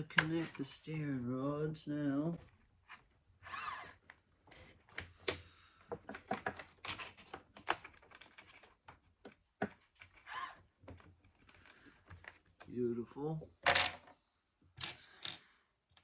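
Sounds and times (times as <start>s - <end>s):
small parts clicking and tapping: 4.8s - 10.2s, 14.8s - 16.0s.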